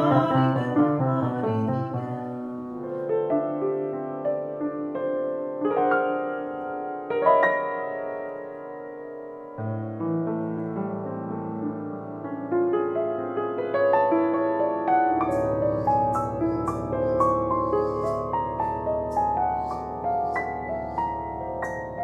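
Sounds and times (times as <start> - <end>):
piano chords: 0.0 - 22.0
light cymbal strokes: 15.2 - 22.0.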